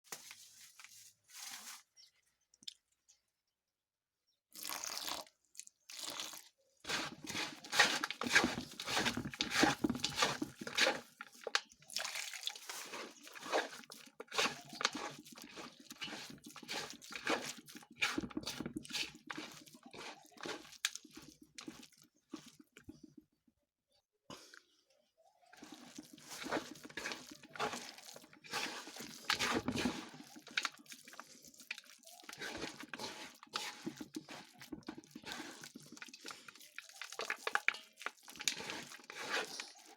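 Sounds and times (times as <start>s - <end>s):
crunchy slime crackling: 25.6s - 39.9s.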